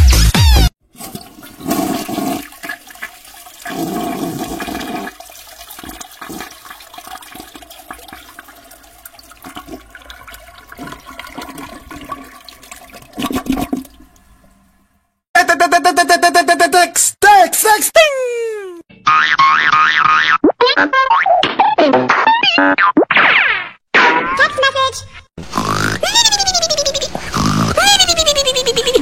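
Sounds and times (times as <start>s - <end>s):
toilet flushing: 0.8s - 15.0s.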